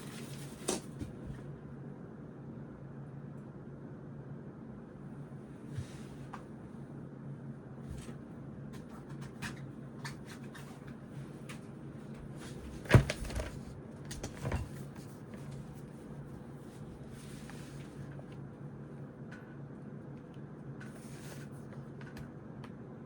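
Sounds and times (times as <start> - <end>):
steady low hum: 0.0 - 23.0.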